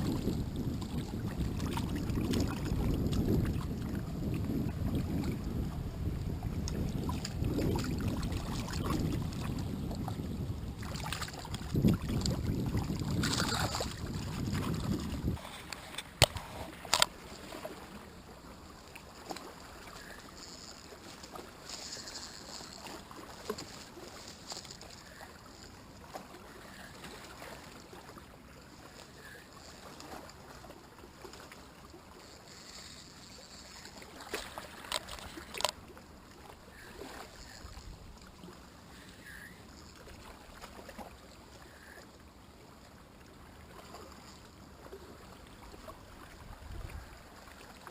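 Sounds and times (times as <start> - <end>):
wind rumble on microphone: 0.0 - 17.0, 46.3 - 47.2.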